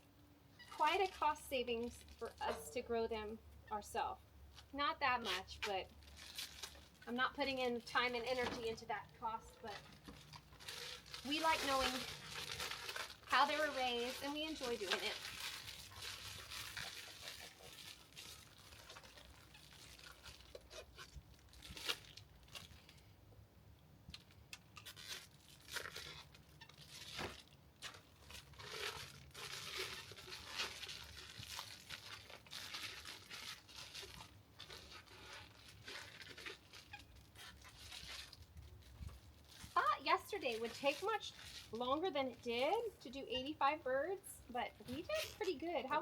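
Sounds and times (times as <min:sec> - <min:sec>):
plastic bags crinkling: 0:00.6 - 0:03.0, 0:04.5 - 0:23.0, 0:24.2 - 0:46.0.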